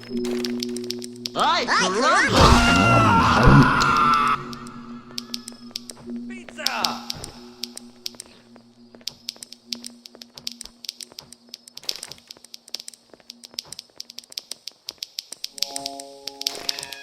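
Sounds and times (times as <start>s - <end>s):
rapid small clicks and taps: 0.0s - 1.4s, 5.1s - 17.0s.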